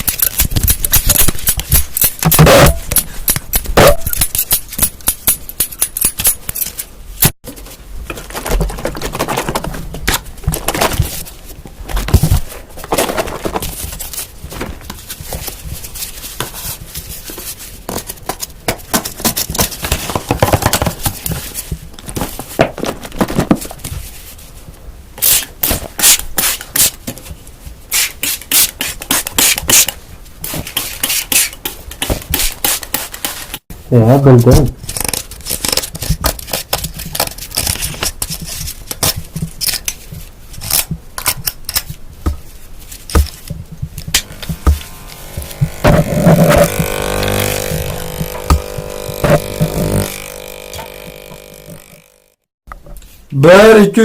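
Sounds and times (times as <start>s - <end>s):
scratching and tapping small objects: 0.0s - 7.4s, 35.2s - 52.0s.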